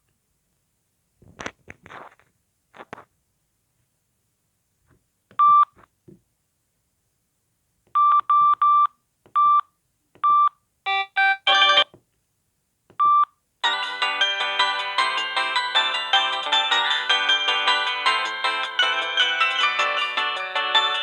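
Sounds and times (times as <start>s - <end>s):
phone keypad beeps: 5.4s - 5.8s, 8.0s - 11.9s, 13.0s - 13.3s.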